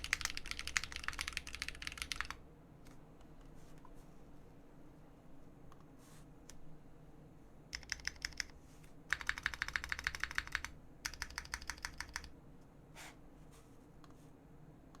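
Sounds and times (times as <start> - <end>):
fast mechanical keyboard typing: 0.0 - 2.4, 7.8 - 8.5, 9.1 - 12.3.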